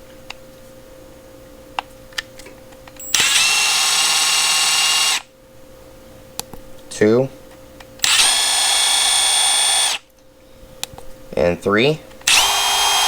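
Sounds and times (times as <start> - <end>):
impact wrench whining: 3.0 - 5.3, 8.0 - 10.0, 12.2 - 13.0.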